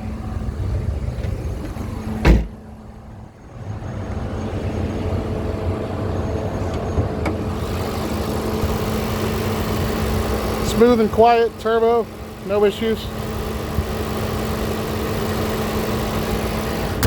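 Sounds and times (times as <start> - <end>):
loud thump: 2.2 - 2.6
car engine idling: 7.4 - 17.0.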